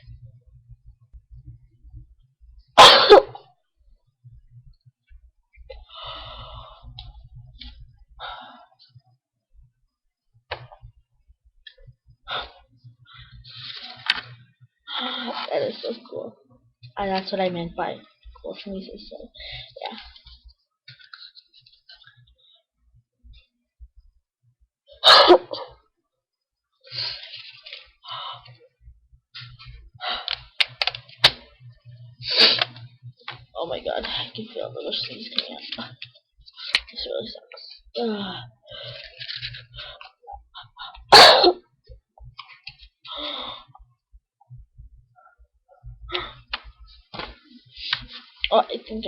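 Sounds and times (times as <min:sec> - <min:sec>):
person sneezing: 0:02.8 - 0:03.4, 0:25.0 - 0:25.8, 0:41.1 - 0:41.6
soft breathy noises: 0:05.7 - 0:09.0.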